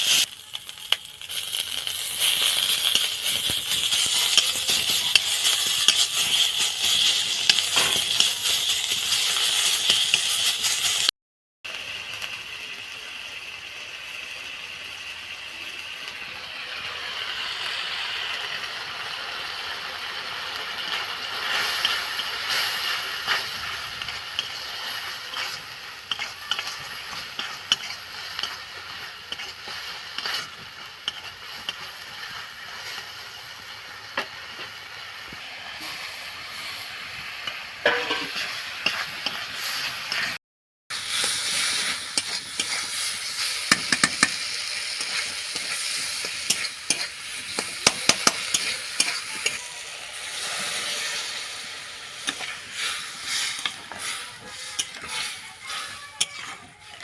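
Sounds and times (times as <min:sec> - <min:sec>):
food sizzling in hot oil: 0:00.0 - 0:11.1, 0:11.7 - 0:57.0
metal spatula scraping pan: 0:21.5 - 0:28.7, 0:37.8 - 0:40.4, 0:41.2 - 0:57.0.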